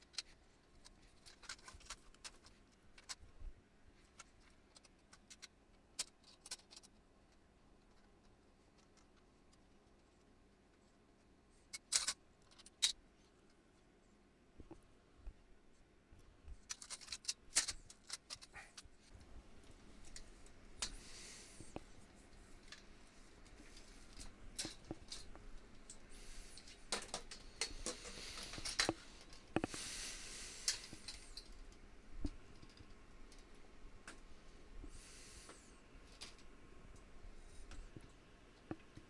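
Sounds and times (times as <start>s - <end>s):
metal frame parts clicking: 11.7s - 12.9s.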